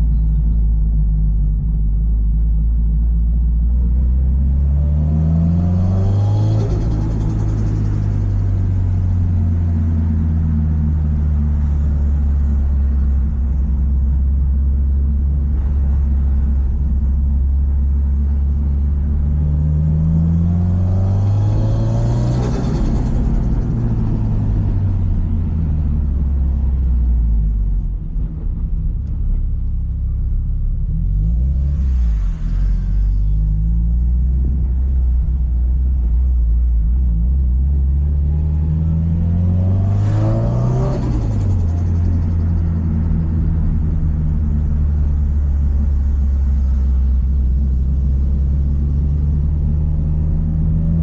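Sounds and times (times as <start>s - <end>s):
car engine revving: 3.9s - 51.0s.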